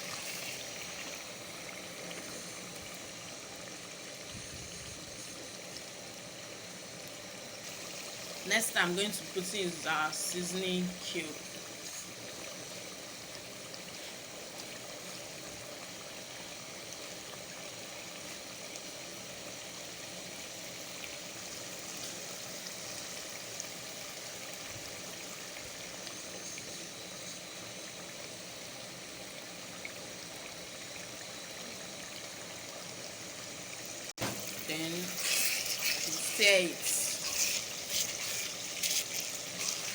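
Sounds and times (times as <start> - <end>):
stew bubbling and sizzling: 0.0 - 39.9.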